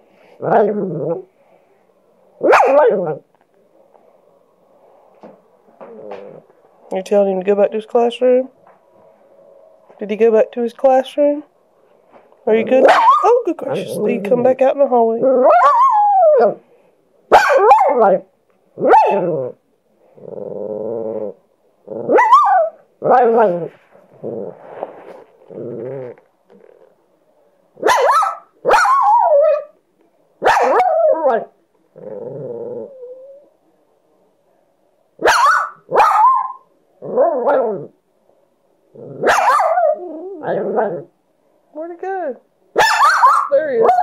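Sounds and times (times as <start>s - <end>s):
dog growling: 0.4s - 1.3s, 5.7s - 6.6s, 18.8s - 27.0s, 30.8s - 33.5s, 37.0s - 38.0s, 38.9s - 41.1s
dog barking and yowling: 2.4s - 3.2s, 12.8s - 13.5s, 15.2s - 16.6s, 17.3s - 19.6s, 22.0s - 23.7s, 27.8s - 29.8s, 30.4s - 31.5s, 35.2s - 37.9s, 39.2s - 41.1s, 42.8s - 44.0s.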